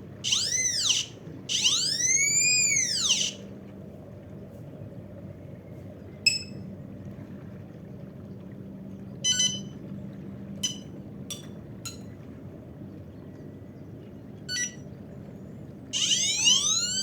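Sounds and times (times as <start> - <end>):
high-pitched buzzer beeps: 9.3 - 9.7, 14.5 - 14.8, 16.0 - 17.0.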